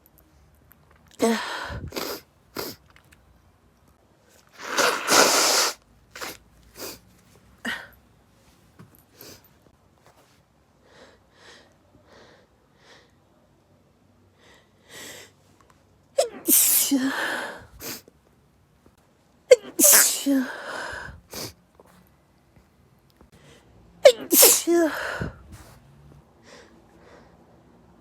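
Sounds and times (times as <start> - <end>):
person sneezing: 4.6 - 7.0, 16.2 - 18.0, 19.5 - 21.6, 24.0 - 25.4.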